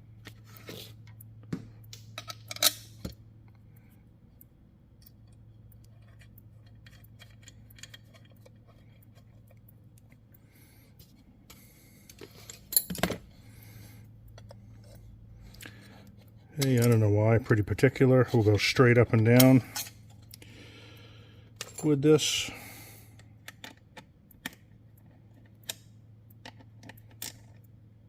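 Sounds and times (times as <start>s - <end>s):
steady low hum: 0.0s - 28.0s
metal parts clinking: 2.2s - 3.0s, 6.0s - 8.8s, 12.1s - 13.2s.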